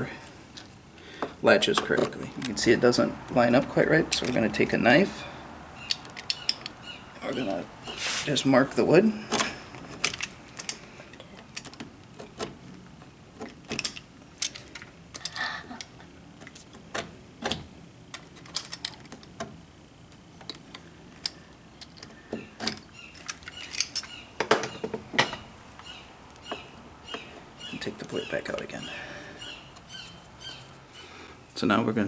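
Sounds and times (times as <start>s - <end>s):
knife scraping wood: 7.9s - 8.3s.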